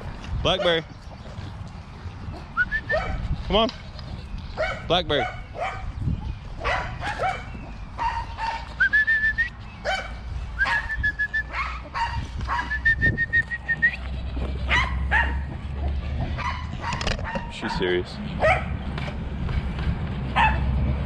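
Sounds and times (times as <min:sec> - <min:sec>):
dog barking and yipping: 0:02.3 - 0:03.3, 0:04.5 - 0:06.0, 0:06.6 - 0:08.8, 0:09.8 - 0:12.9, 0:14.6 - 0:18.8, 0:20.3 - 0:20.7.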